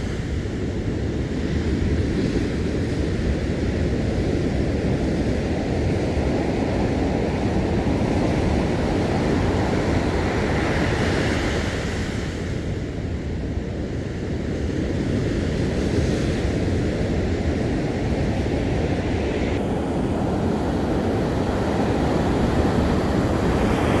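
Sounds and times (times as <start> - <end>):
sea surf breaking on beach: 15.8 - 24.0.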